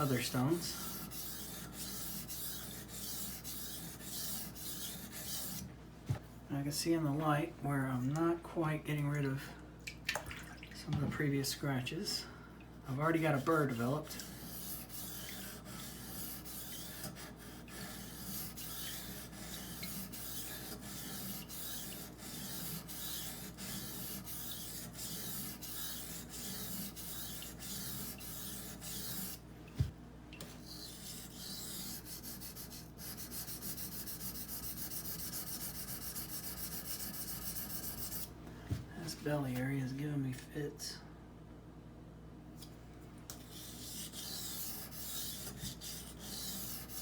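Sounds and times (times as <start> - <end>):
knife scraping on water stone: 0.0 - 5.6, 13.1 - 29.4, 30.6 - 38.3, 43.3 - 47.0.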